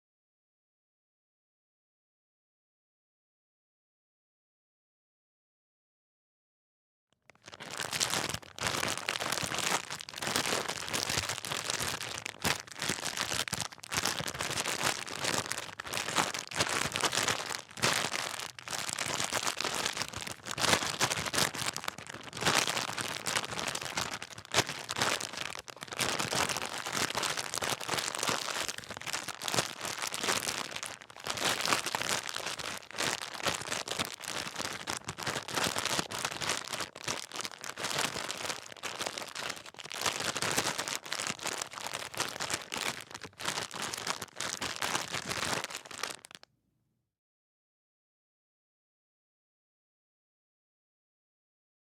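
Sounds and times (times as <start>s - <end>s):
plastic bag crinkling: 7.3s - 46.4s.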